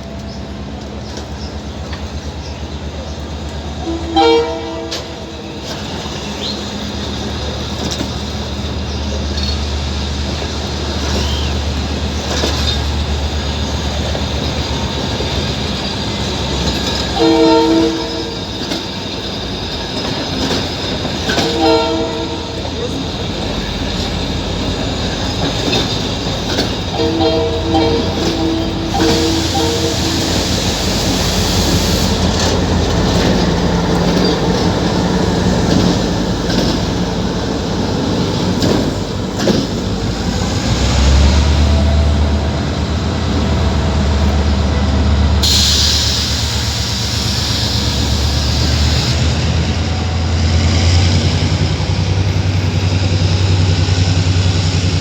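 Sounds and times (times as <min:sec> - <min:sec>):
train rumbling: 0:00.0 - 0:55.0
train horn blasts: 0:03.8 - 0:05.8, 0:17.0 - 0:18.6, 0:21.3 - 0:22.9, 0:26.9 - 0:32.2.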